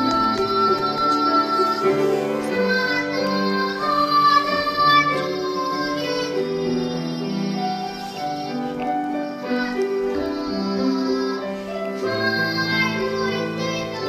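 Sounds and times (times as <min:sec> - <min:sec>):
children's choir singing: 0:00.0 - 0:14.0
instrumental accompaniment: 0:00.0 - 0:14.0.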